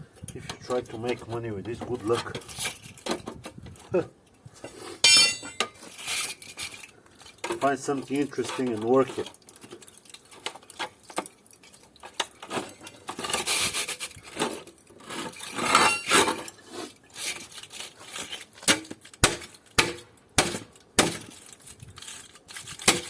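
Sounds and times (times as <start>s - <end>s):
metal parts clinking and rattling: 2.1s - 3.9s, 5.0s - 16.6s.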